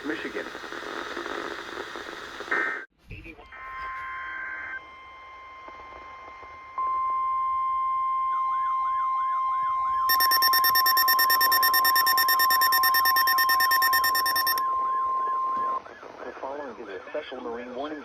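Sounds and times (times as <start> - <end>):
rapid pulsing beep: 10.1 - 14.6
steady warning alarm tone: 10.1 - 14.6
warbling alarm: 10.1 - 14.8.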